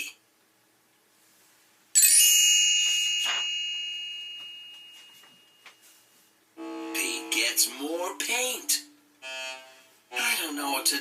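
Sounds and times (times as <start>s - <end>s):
bright chime ringing: 2.0s - 6.0s.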